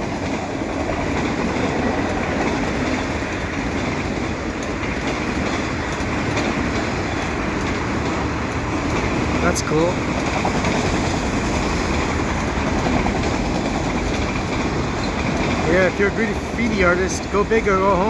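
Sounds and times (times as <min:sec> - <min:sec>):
train wheels rumbling on rails: 0:00.0 - 0:18.0.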